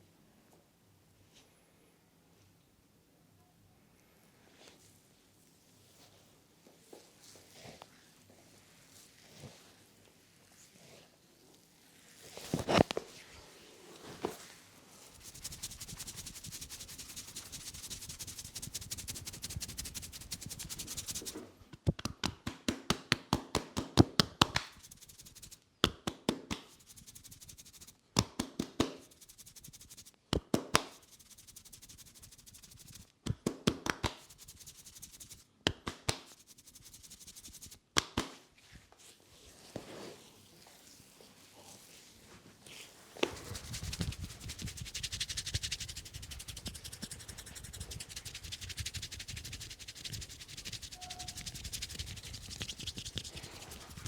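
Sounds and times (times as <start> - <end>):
hands rubbing skin: 15.1 - 21.5, 23.8 - 38.3, 43.2 - 54.0
quick sharp massage taps: 15.2 - 38.4, 43.2 - 54.0.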